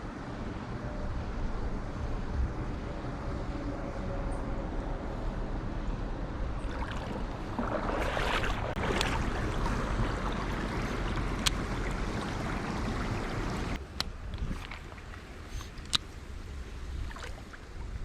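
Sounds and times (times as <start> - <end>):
wind buffeting microphone: 6.1 - 18.0.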